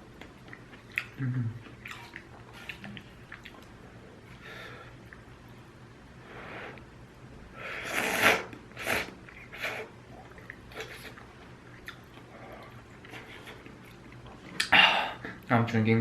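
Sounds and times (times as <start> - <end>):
soft chewing: 0.0 - 5.8, 8.2 - 15.5
person slurping noodles: 7.6 - 9.9.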